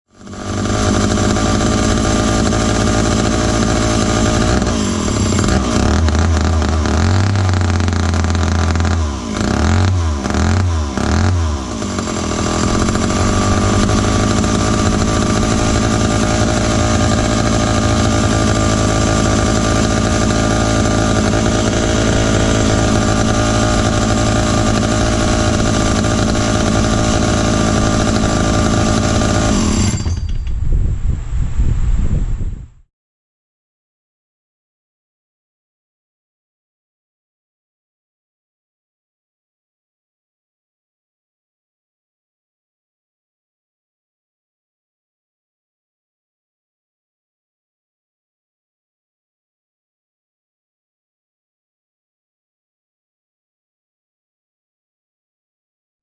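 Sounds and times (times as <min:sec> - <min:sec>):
chainsaw engine running: 0:00.1 - 0:30.4.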